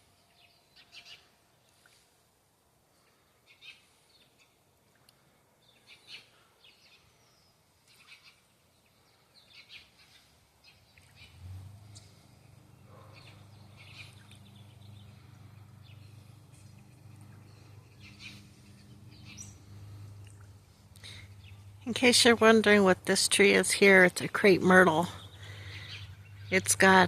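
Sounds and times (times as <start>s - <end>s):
small birds chirping: 0.0s - 2.1s, 2.9s - 27.0s
steady low hum: 10.9s - 27.0s.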